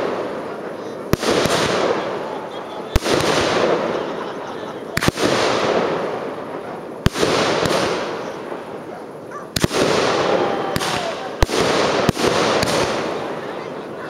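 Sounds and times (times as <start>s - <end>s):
firework shells bursting: 0.0s - 13.5s
firework crackling: 0.0s - 14.0s.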